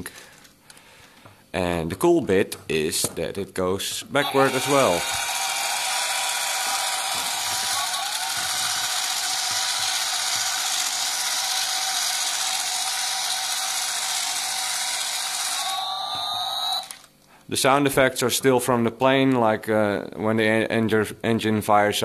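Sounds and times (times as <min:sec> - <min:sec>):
toy motor and gears whirring: 0:04.2 - 0:17.2.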